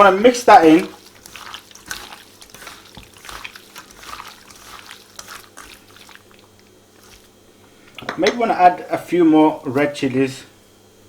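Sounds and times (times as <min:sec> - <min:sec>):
wet hand mixing of meat: 0:00.0 - 0:10.4.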